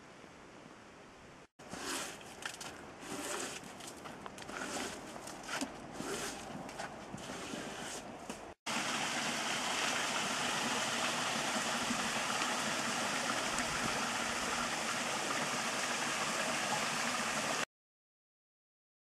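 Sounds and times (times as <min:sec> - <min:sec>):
stream rushing: 0:08.7 - 0:17.6.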